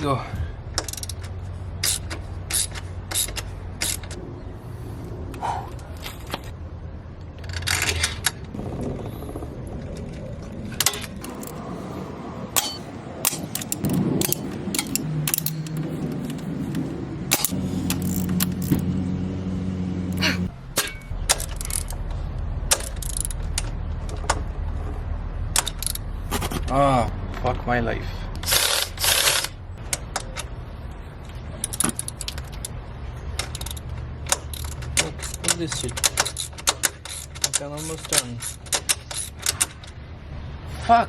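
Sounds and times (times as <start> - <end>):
low steady hum: 0.0 - 27.4
metal tools clinking: 0.8 - 4.2, 12.6 - 18.8, 20.8 - 22.1, 33.4 - 40.0.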